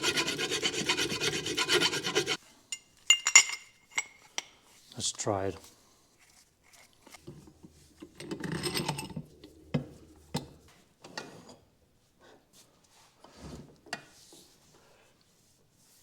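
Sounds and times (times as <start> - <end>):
rubbing scraping noise: 0.0 - 2.4
metallic knocks and clinks: 3.1 - 4.2, 7.2 - 10.6.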